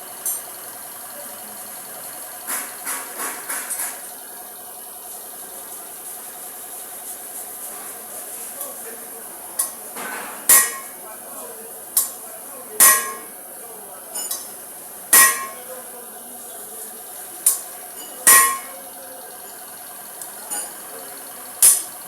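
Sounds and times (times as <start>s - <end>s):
steady background noise: 0.0s - 22.0s
metal-on-metal strikes ringing: 10.5s - 11.0s, 12.8s - 13.3s, 15.2s - 15.6s, 18.3s - 18.8s.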